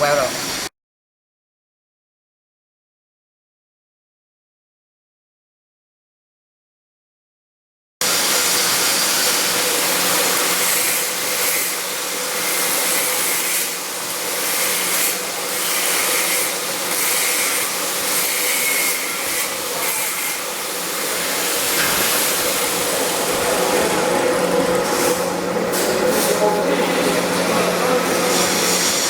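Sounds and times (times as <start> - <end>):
welding arc hissing: 8.0 - 26.4, 28.0 - 29.0.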